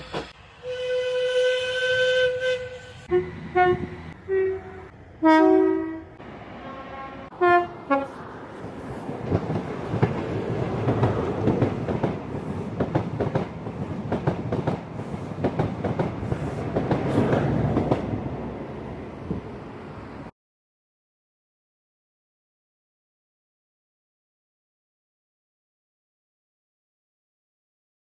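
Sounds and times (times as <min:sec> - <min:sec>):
train passing with rumble: 0:00.0 - 0:20.3
train horn blasts: 0:00.6 - 0:08.2.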